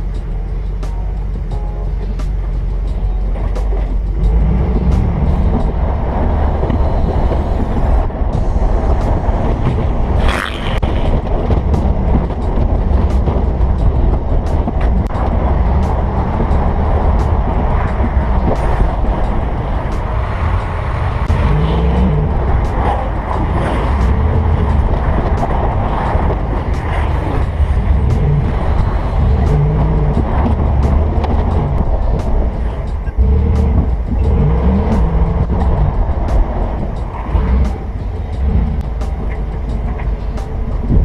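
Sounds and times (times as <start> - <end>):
vehicle engine and road rumble: 0.0 - 41.0.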